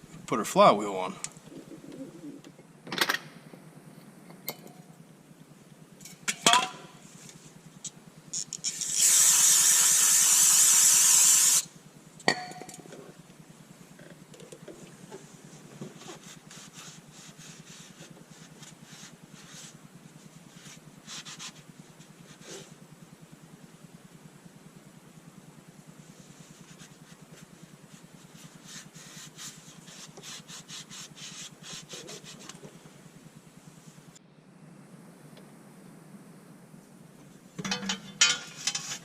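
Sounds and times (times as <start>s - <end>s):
loud steady hiss: 6.4s - 12.8s, 14.9s - 39.0s
metal clinks and knocks: 37.6s - 39.0s.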